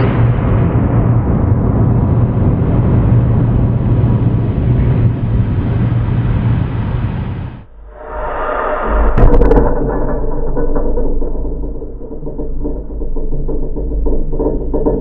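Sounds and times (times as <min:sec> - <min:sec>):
strong low hum: 0:00.0 - 0:15.0.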